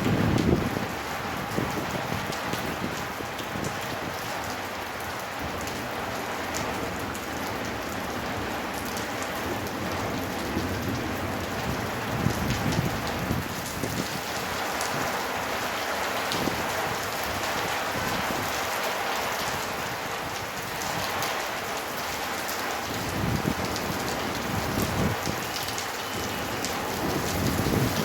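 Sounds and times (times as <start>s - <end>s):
heavy rain pouring: 0.0s - 28.0s
raindrops ticking: 20.2s - 28.0s.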